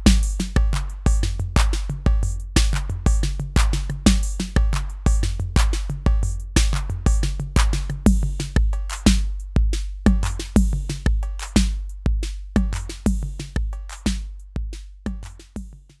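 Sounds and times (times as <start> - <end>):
booming bass drum: 0.0 - 16.0
hi-hat ticks: 0.0 - 16.0.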